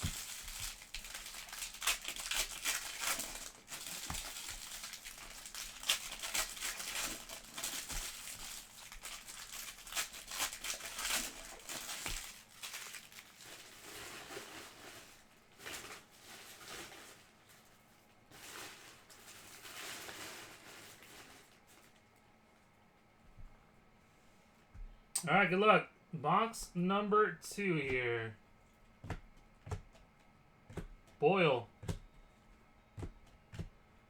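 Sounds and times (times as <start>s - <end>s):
foil wrappers crinkling and tearing: 0.0s - 22.2s.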